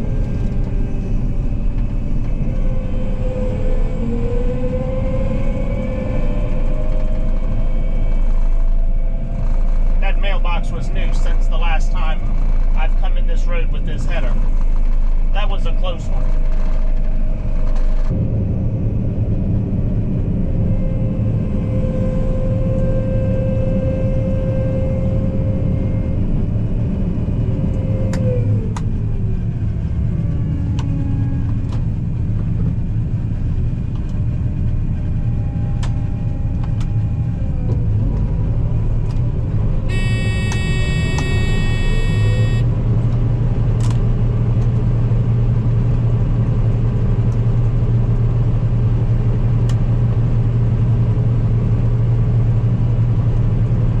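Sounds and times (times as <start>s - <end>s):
combine engine droning: 0.0s - 54.0s
high electronic tone: 39.9s - 42.7s.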